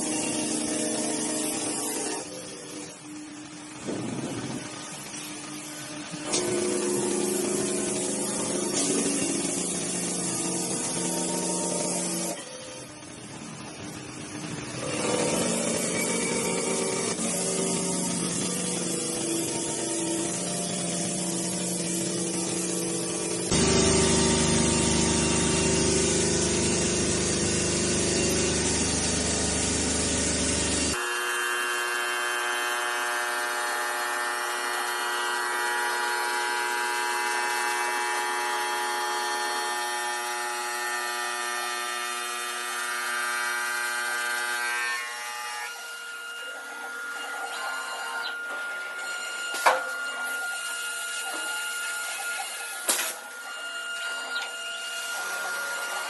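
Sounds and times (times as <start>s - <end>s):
saw motor humming: 0.0s - 56.0s
water coolant spraying: 16.7s - 31.0s.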